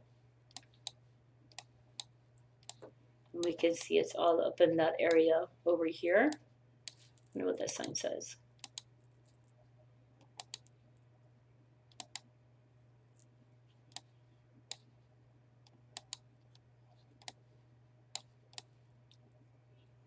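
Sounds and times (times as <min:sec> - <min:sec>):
faint low electrical hum: 0:00.0 - 0:20.0
computer mouse clicking: 0:00.5 - 0:03.9, 0:08.6 - 0:08.9, 0:10.2 - 0:10.7, 0:11.9 - 0:12.3, 0:13.9 - 0:14.1, 0:15.7 - 0:16.6, 0:17.2 - 0:17.4, 0:18.2 - 0:19.2.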